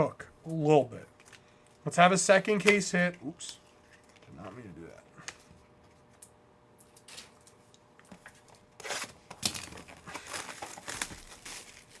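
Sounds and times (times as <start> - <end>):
card wrappers rustling and clicking: 8.1 - 12.0.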